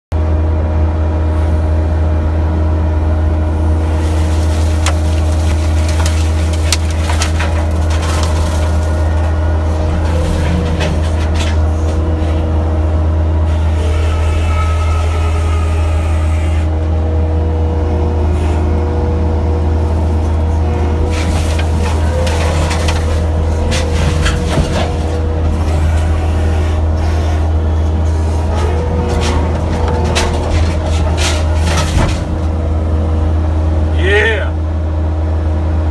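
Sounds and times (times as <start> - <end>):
diesel engine running steadily: 0.1 - 35.9
brush cracking and snapping: 4.1 - 9.3.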